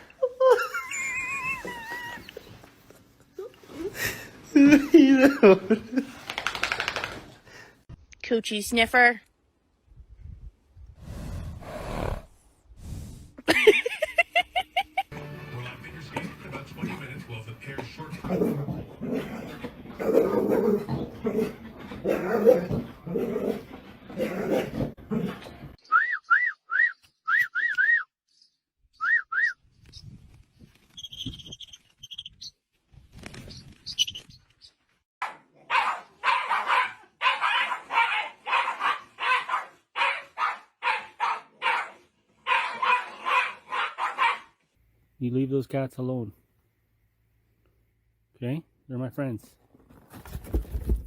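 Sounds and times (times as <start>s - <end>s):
dog barking: 35.2s - 44.6s.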